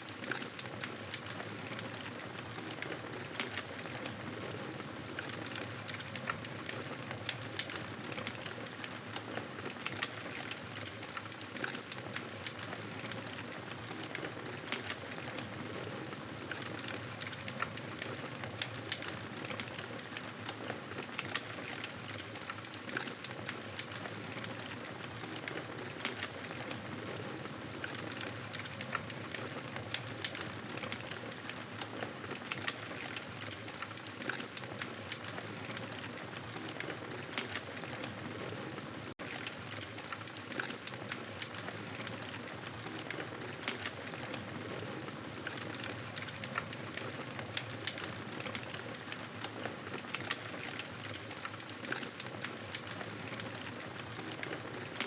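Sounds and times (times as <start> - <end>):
campfire crackling: 0.1 - 55.0.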